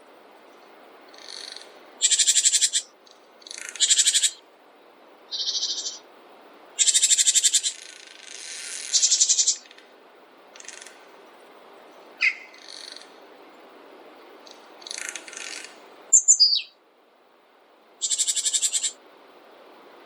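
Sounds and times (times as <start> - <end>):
faint background hiss: 0.0 - 20.0
songbirds trilling: 0.5 - 4.4, 5.3 - 6.0, 6.8 - 9.8, 11.8 - 13.6, 14.2 - 16.8, 18.0 - 19.0.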